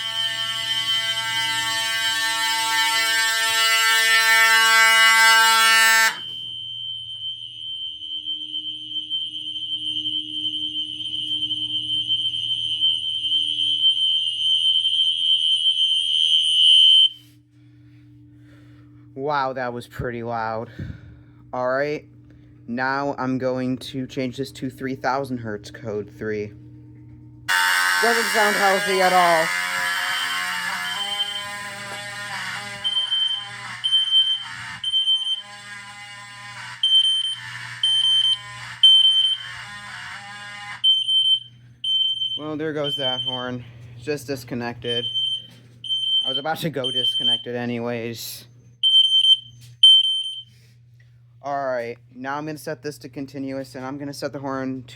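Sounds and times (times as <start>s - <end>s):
fire alarm horn steady tone: 0.0s - 17.4s, 27.5s - 44.2s, 44.8s - 47.7s, 48.8s - 50.7s
low hum: 6.1s - 46.2s.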